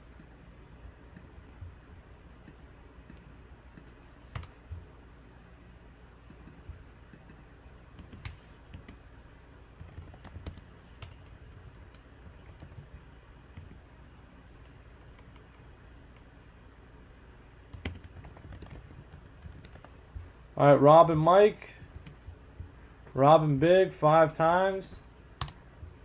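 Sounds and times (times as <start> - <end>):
low steady hum: 0.0 - 26.0
keyboard and mouse clicks: 2.4 - 4.8, 6.2 - 9.0, 9.8 - 13.8, 14.6 - 16.3, 17.7 - 20.3, 25.4 - 25.6.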